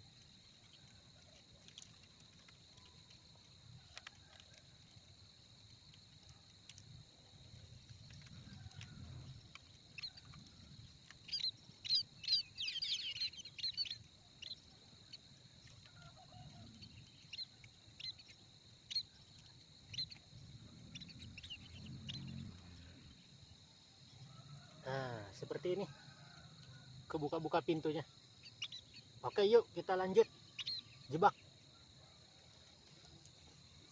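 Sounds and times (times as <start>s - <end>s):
small birds chirping: 7.5s - 25.8s, 27.1s - 31.8s.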